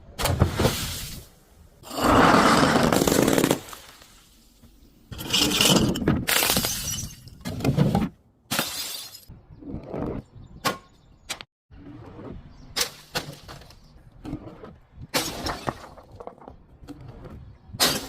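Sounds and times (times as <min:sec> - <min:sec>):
glass bottle shattering: 0:05.2 - 0:07.4, 0:08.5 - 0:09.3.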